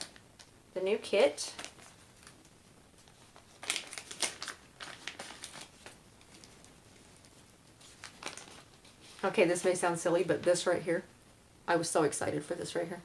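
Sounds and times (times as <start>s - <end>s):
packaging crinkling and rustling: 1.5s - 9.3s.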